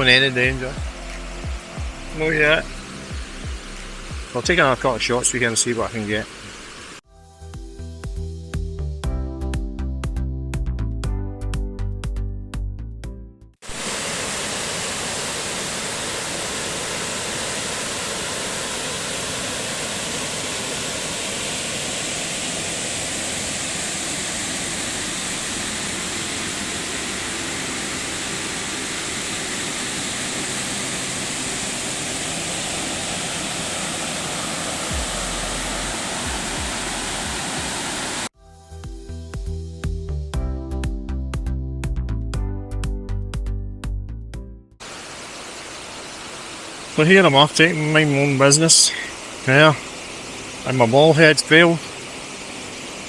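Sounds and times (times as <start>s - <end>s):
background music: 0.0s - 6.2s, 38.4s - 44.6s
waterfall roaring: 0.0s - 7.0s, 13.6s - 38.3s, 44.8s - 53.0s.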